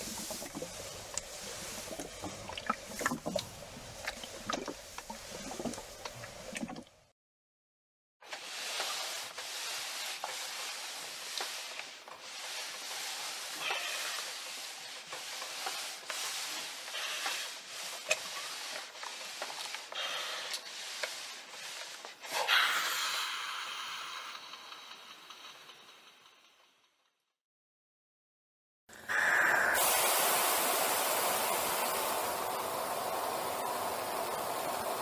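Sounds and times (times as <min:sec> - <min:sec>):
iron rubbing over fabric: 0:08.2 - 0:22.9
steam burst hissing: 0:22.3 - 0:25.9, 0:28.9 - 0:35.0.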